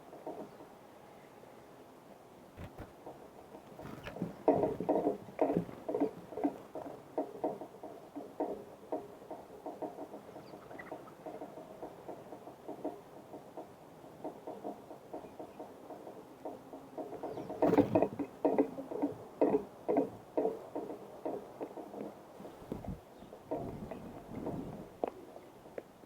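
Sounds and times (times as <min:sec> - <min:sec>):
birds pecking at a feeder: 0:02.6 - 0:25.9
faint bird chirps: 0:10.2 - 0:11.3, 0:17.2 - 0:17.8.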